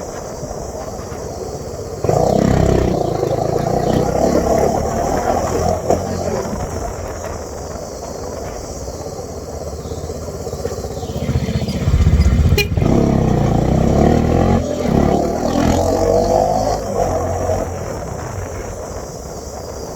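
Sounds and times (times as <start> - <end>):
motorcycle engine running: 0.0 - 19.9.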